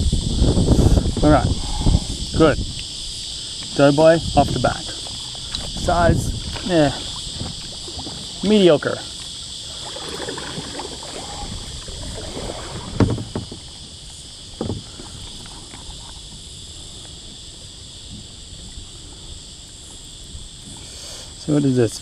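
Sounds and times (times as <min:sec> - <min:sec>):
insects buzzing: 0:00.0 - 0:22.0
knocks on a kayak: 0:12.9 - 0:13.7, 0:14.6 - 0:14.9.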